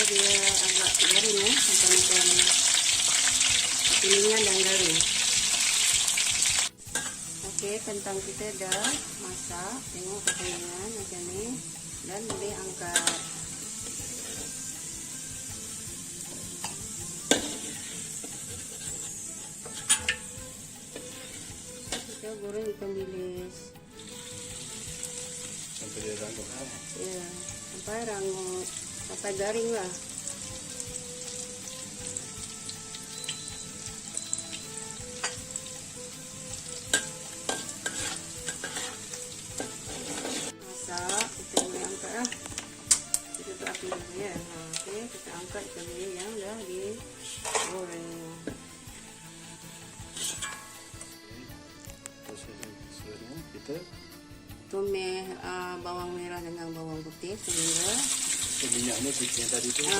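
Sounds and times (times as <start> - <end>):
oil sizzling in a wok: 0.0 - 52.4, 53.7 - 59.9
utensil scraping and knocking pan: 37.0 - 39.0, 39.6 - 40.5, 47.3 - 47.8, 50.1 - 50.8.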